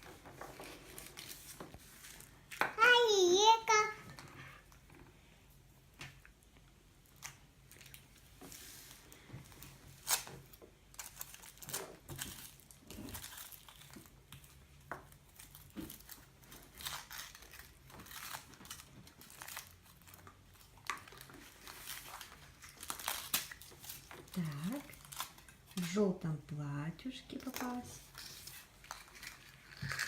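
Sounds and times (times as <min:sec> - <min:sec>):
foil wrapper crinkling and tearing: 0:09.6 - 0:26.0, 0:27.4 - 0:30.0.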